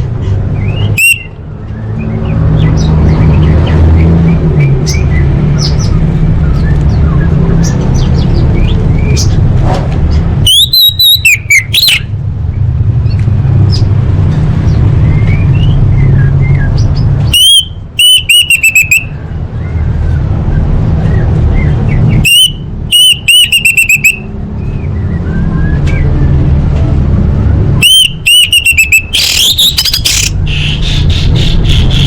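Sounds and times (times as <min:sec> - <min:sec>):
thrush whistled song: 0:00.6 - 0:03.4, 0:04.0 - 0:09.2, 0:10.4 - 0:12.1, 0:15.0 - 0:26.4, 0:27.8 - 0:32.0.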